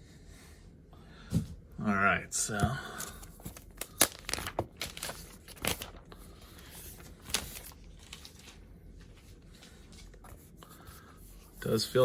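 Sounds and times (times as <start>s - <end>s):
packaging rustling: 2.5s - 10.8s.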